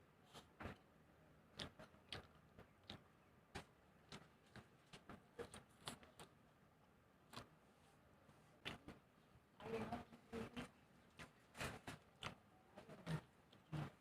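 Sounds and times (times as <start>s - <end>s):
chewing clicks and smacks: 1.5s - 6.4s, 8.6s - 9.0s, 10.5s - 13.9s.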